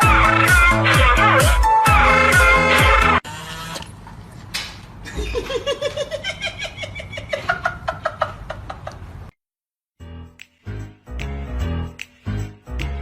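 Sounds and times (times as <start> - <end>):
person laughing high-pitched: 0.2 - 1.7.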